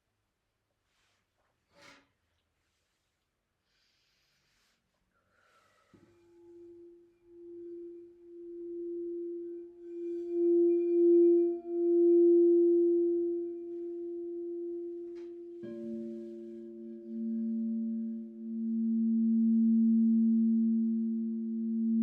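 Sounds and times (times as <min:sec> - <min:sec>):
crystal singing bowls ringing: 0:06.1 - 0:22.0.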